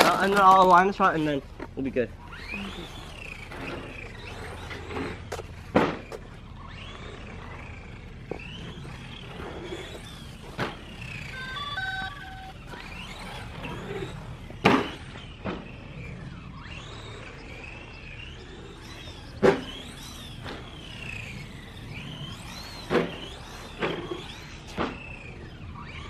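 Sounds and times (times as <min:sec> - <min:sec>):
electric motor of toy car whining: 0:00.0 - 0:26.0
steady low hum: 0:00.9 - 0:26.0
electronic beeps: 0:10.9 - 0:14.1.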